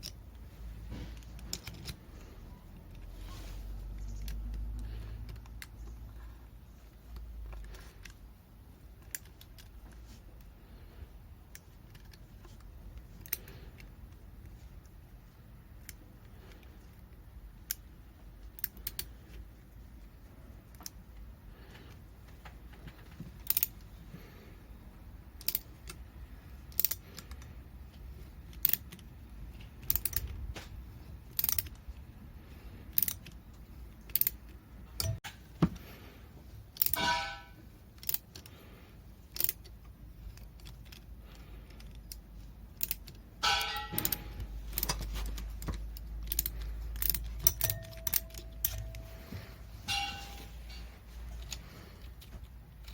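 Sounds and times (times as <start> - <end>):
metallic clicks of hand tools: 23.4 - 23.8, 25.4 - 26.0, 26.6 - 27.5, 28.5 - 30.4, 31.3 - 32.0, 32.9 - 35.4, 36.7 - 38.6, 39.3 - 49.3
metal parts rattling clatter: 36.8 - 38.4, 42.8 - 49.0, 49.9 - 51.8.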